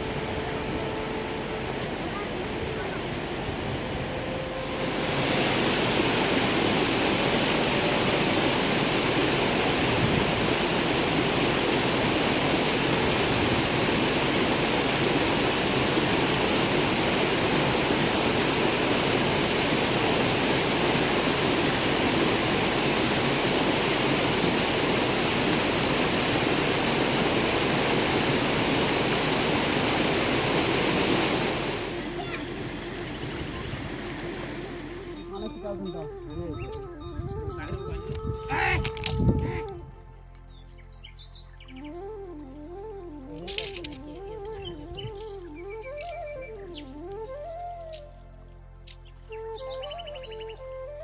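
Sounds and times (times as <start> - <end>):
rushing water: 0.0 - 36.0.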